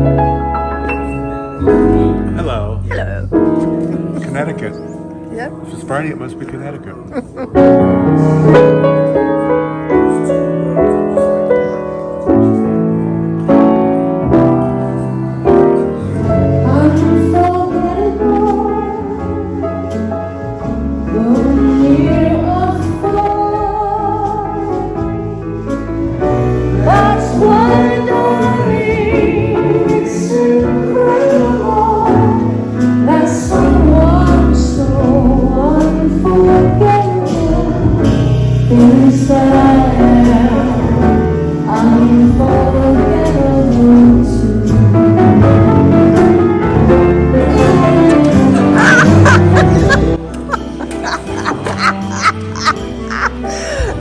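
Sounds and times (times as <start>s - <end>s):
piano accompaniment: 0.0s - 54.0s
woman singing with vibrato: 21.1s - 24.9s, 33.1s - 44.8s.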